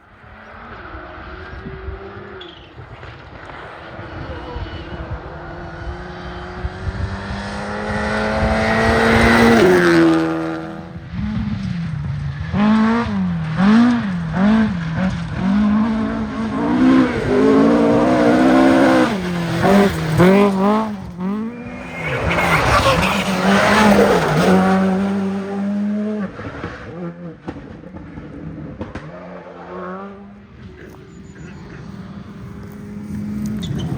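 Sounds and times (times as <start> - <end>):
rally car engine revving: 0.2 - 33.9.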